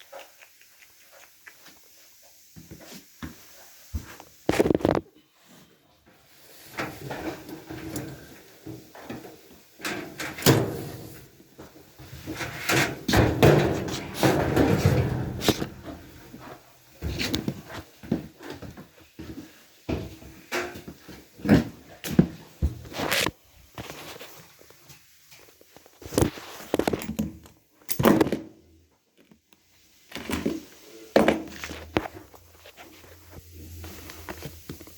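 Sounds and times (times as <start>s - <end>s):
metal panels knocking and clattering: 6.8s - 11.3s, 12.1s - 16.2s.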